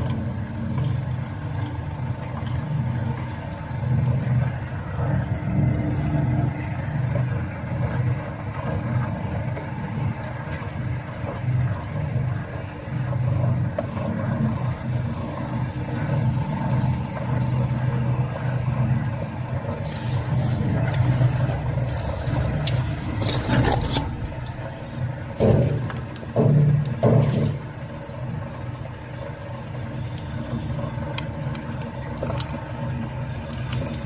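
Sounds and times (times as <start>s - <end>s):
food grinder motor humming: 0.0s - 34.0s
scraping and clattering: 19.8s - 27.6s.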